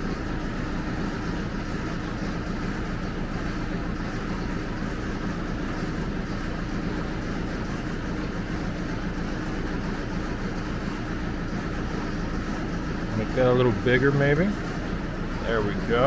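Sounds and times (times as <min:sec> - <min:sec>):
low buzzing machine hum: 0:00.0 - 0:16.0.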